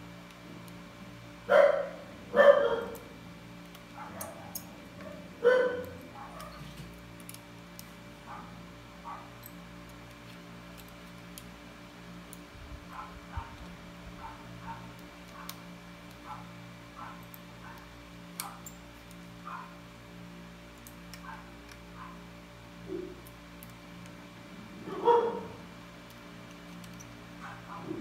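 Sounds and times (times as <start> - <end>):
dog yelping: 1.5 - 3.0, 4.0 - 6.6, 24.8 - 25.6
dog barking: 1.5 - 3.1, 4.0 - 6.6, 8.3 - 9.3, 12.9 - 13.6, 14.2 - 15.5, 16.2 - 17.8, 19.4 - 19.8, 21.2 - 22.2, 24.8 - 25.6, 27.4 - 28.0.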